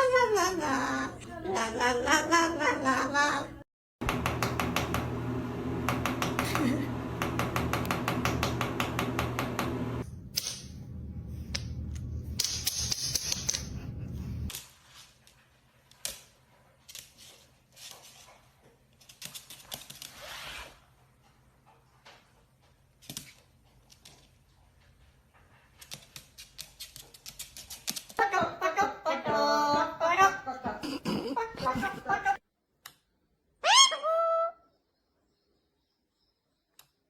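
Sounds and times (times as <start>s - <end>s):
steady low hum: 4.0s - 12.7s, 13.5s - 14.5s.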